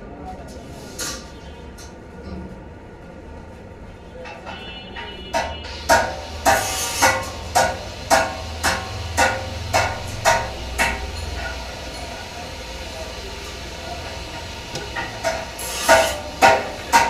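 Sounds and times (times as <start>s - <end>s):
hammer striking metal: 4.3s - 12.5s, 14.0s - 17.0s
low hum: 7.3s - 15.5s.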